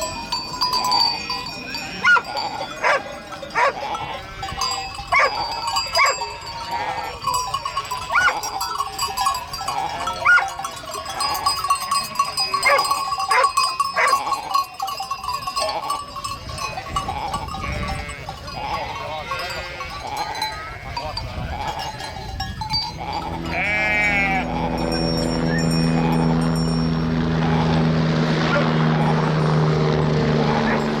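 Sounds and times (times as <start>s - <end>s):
thin ringing tone: 0.0s - 28.0s
flock bleating: 17.2s - 21.8s, 22.9s - 26.3s.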